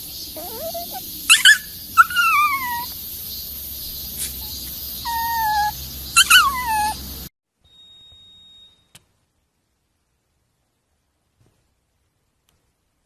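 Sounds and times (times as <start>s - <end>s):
animal yelping and whining: 0.3s - 2.9s, 4.4s - 7.1s.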